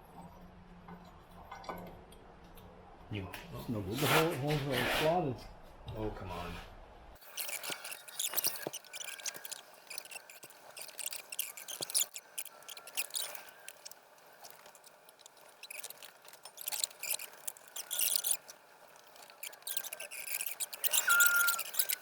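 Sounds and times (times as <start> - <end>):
metal scraping and rubbing: 3.9 - 5.2, 7.2 - 22.0.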